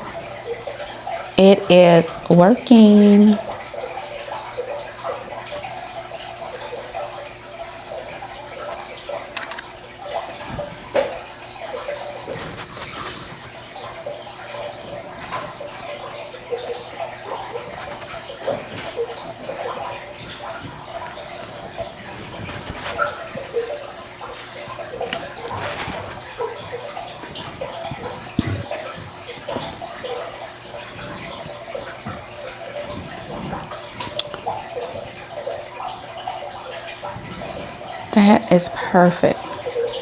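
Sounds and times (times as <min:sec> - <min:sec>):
small taps clicks and rustles: 0:09.3 - 0:09.8.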